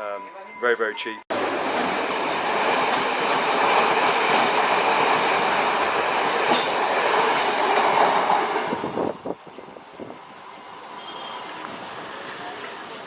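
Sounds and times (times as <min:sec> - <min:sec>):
train rumbling on rails: 0:01.3 - 0:13.0
high squeals of train: 0:06.5 - 0:13.0.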